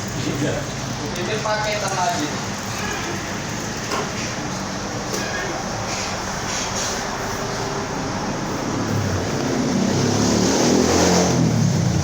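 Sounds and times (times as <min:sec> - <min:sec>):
vehicle engine passing by: 0:06.2 - 0:12.0.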